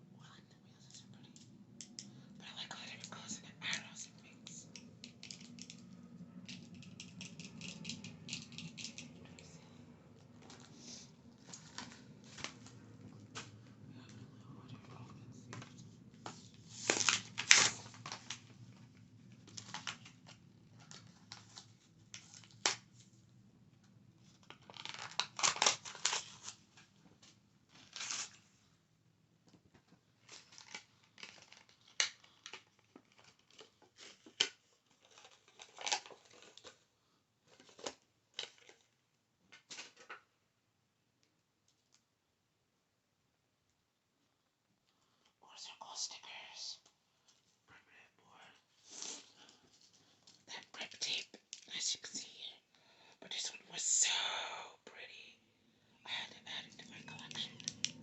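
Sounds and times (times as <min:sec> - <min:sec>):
scratchy rustles and crinkles: 0:10.3 - 0:13.8, 0:14.6 - 0:23.2, 0:29.6 - 0:38.9.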